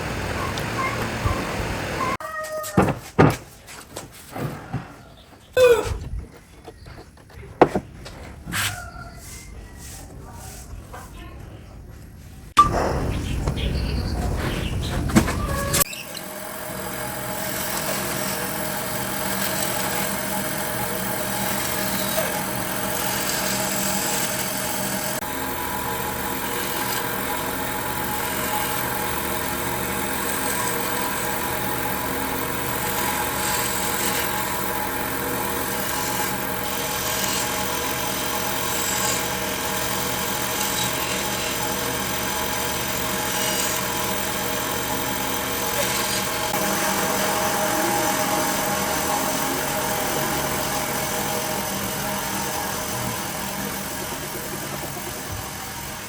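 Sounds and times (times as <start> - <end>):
power tool grinding wood: 15.7 - 56.0.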